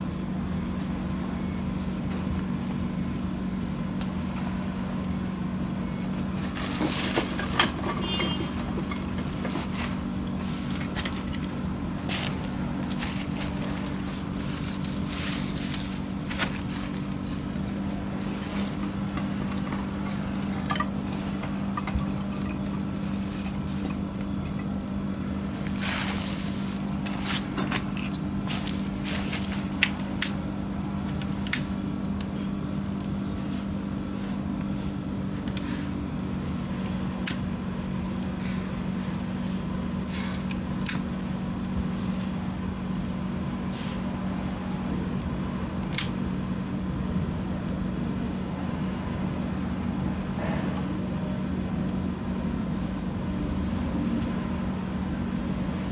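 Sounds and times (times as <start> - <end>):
steady low hum: 0.0 - 55.9
wood fire crackling: 6.0 - 35.6.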